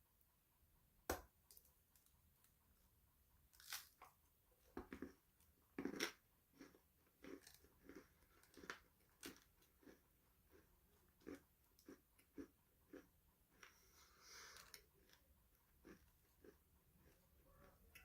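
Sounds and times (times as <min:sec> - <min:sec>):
person biting crunchy food: 0:03.6 - 0:04.0
person chewing: 0:04.7 - 0:18.0.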